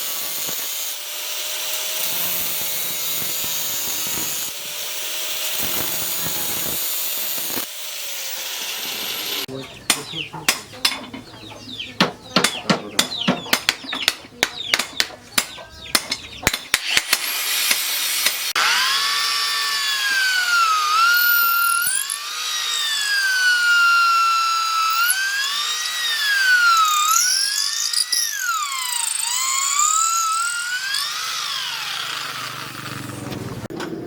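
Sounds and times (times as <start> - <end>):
electric power tool whining: 0.0 - 9.5, 16.8 - 34.0
sharp knocks: 12.0 - 17.0.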